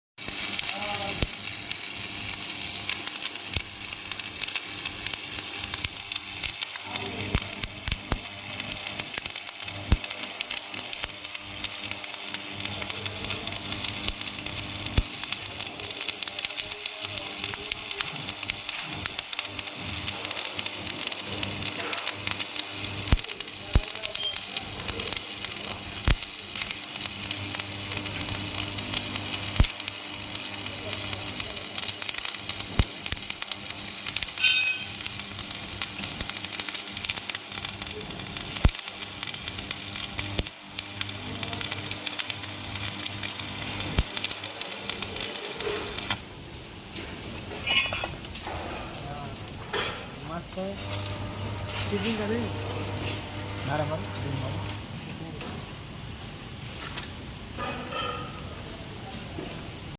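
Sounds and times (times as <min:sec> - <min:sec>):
welding arc crackling: 0:00.2 - 0:59.9.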